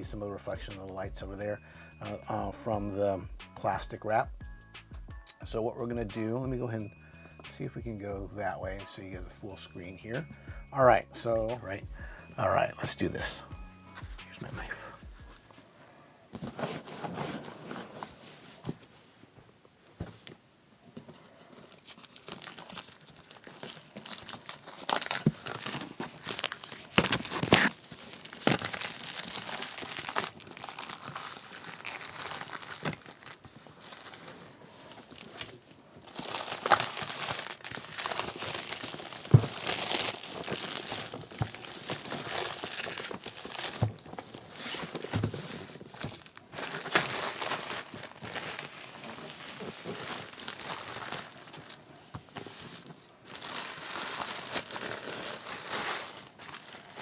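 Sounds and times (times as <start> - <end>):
shrink wrap crinkling and tearing: 21.5 - 57.0.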